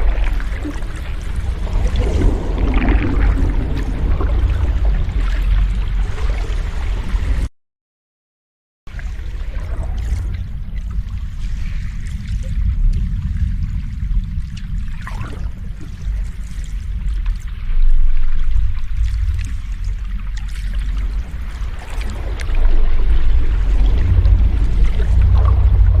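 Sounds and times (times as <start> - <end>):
waves breaking on shore: 0.0 - 7.5.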